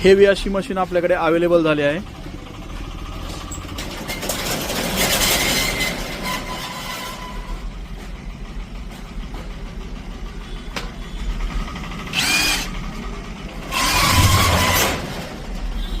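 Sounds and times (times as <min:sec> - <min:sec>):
impact wrench motor whine: 0:12.1 - 0:12.8, 0:13.7 - 0:15.2.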